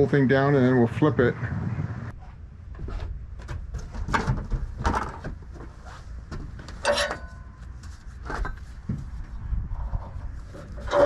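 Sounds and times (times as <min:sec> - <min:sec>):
knocks and clanks of metal and wood: 0:02.7 - 0:09.3, 0:10.5 - 0:11.0.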